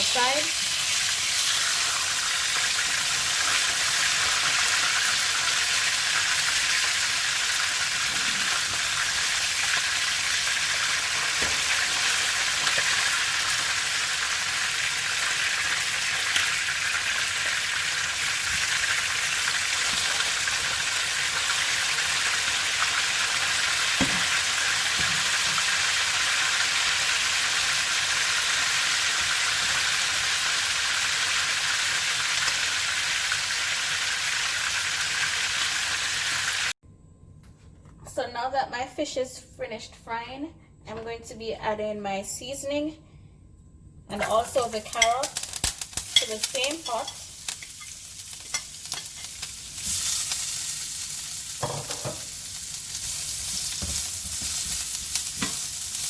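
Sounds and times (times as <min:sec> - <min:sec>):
fish sizzling in hot oil: 0:00.0 - 0:36.7, 0:44.5 - 0:56.0.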